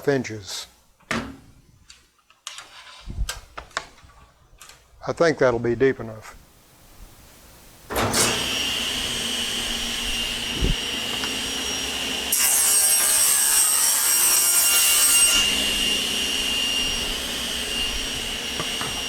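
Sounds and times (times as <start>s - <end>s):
table saw whining: 7.9s - 19.0s.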